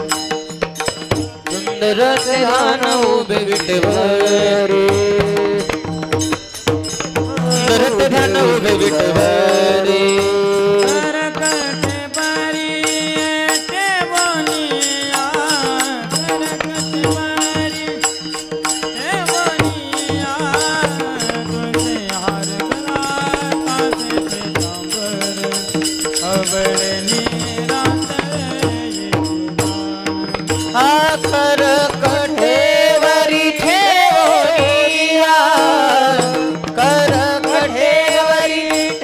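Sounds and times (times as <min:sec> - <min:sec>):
hand drum playing: 0:00.0 - 0:10.9, 0:15.9 - 0:35.0.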